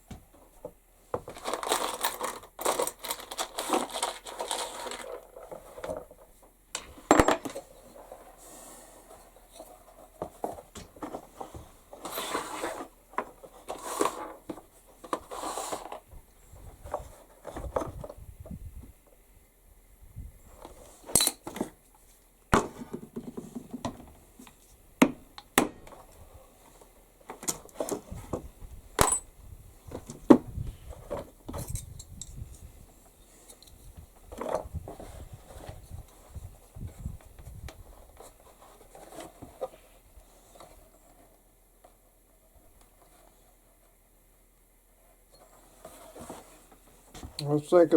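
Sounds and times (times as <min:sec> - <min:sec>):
metal tools clicking and clinking: 0:21.1 - 0:21.5
soft rustling: 0:44.9 - 0:47.9.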